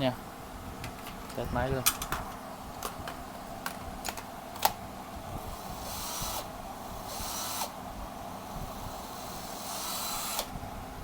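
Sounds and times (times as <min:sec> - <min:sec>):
cordless drill motor whirring: 0:04.0 - 0:10.7.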